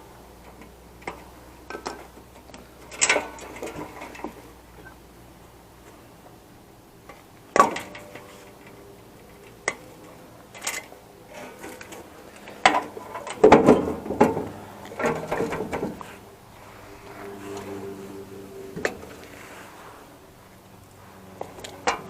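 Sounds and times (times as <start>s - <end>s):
hardware clicks and knocks: 7.0s - 16.2s
hardware clattering and rattling: 7.1s - 19.3s.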